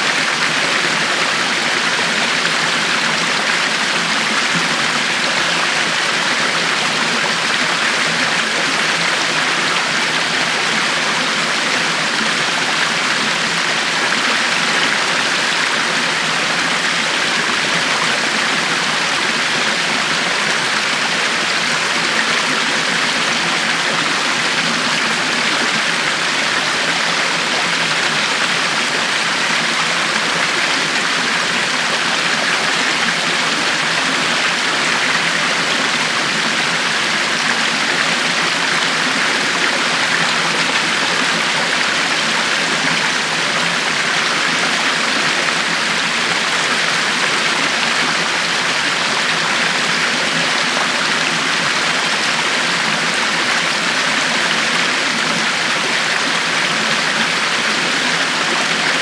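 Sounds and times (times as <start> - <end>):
river water flowing over rocks: 0.0 - 59.0.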